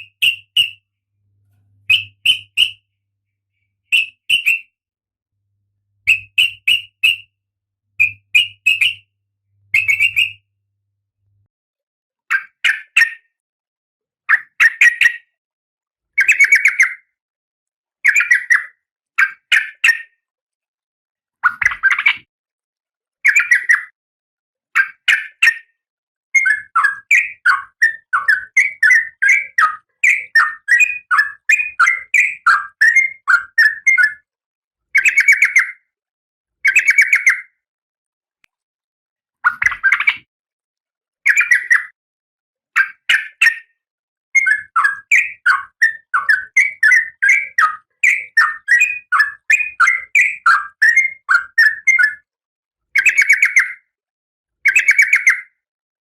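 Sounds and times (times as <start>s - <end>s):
bird calling in harsh bursts: 0.0s - 0.8s, 1.9s - 2.9s, 3.8s - 4.7s, 6.1s - 7.3s, 9.7s - 10.4s
bird chattering: 0.0s - 0.8s, 1.9s - 2.8s, 6.1s - 7.3s, 8.0s - 9.0s, 9.7s - 10.4s.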